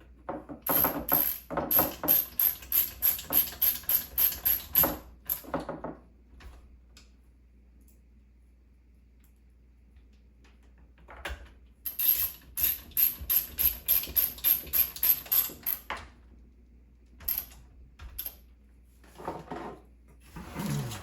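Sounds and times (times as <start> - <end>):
mechanism ratcheting: 11.9 - 15.9.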